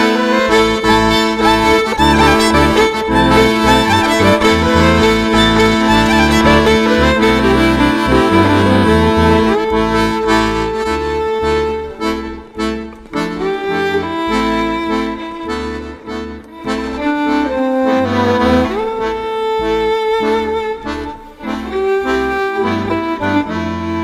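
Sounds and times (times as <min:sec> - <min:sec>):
accordion playing a tune: 0:00.0 - 0:24.0.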